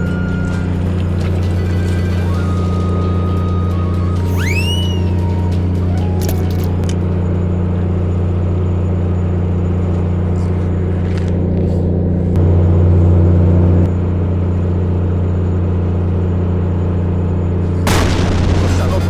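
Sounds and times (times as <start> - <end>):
boat engine humming: 0.0 - 19.0.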